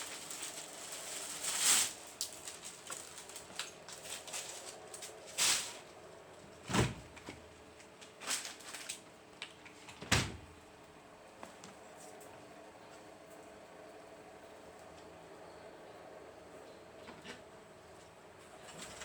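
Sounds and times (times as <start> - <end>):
small clicks and rustles: 0.0 - 5.9.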